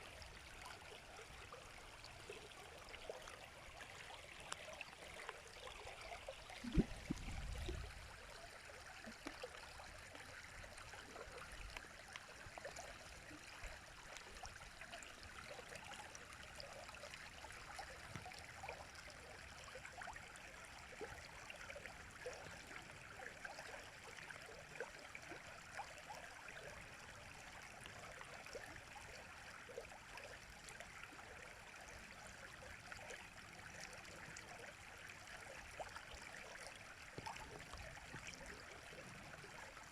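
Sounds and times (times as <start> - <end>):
river water flowing: 0.0 - 20.0
brief low rumble: 6.6 - 7.9
sharp low thump: 6.7 - 7.6.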